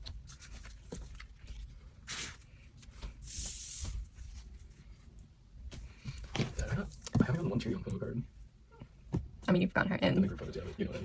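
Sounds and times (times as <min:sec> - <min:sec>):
paper and plastic rustling: 0:00.0 - 0:05.0.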